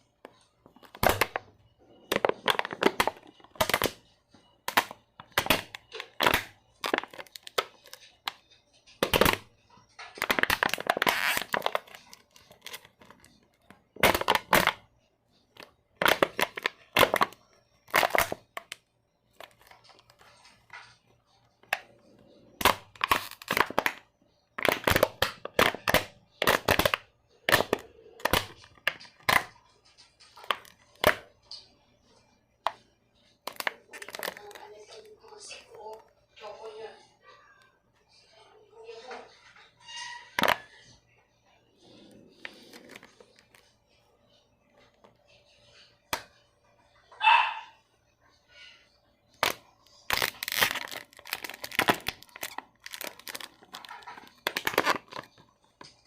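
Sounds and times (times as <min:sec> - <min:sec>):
spine joints popping and cracking: 0:00.2 - 0:14.9, 0:15.5 - 0:31.8, 0:33.4 - 0:35.1, 0:42.2 - 0:43.7, 0:49.3 - 0:56.0.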